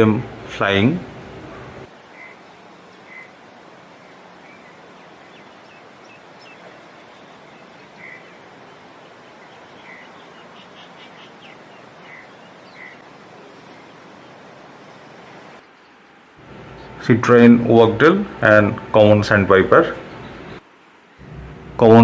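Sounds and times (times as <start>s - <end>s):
outdoor background noise: 0.0s - 22.0s
bird chirping: 2.0s - 3.4s, 4.0s - 17.0s, 19.9s - 20.6s.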